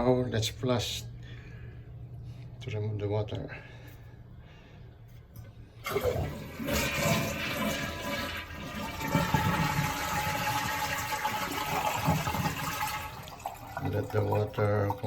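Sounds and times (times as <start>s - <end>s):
toilet flushing: 5.8s - 15.0s.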